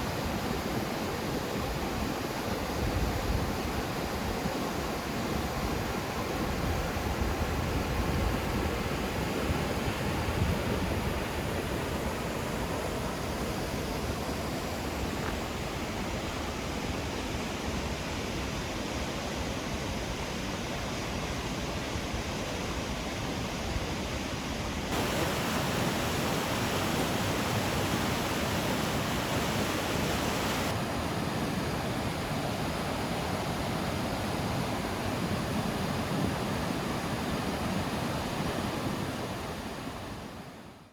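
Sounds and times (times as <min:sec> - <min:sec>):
waterfall rushing: 0:24.9 - 0:39.4.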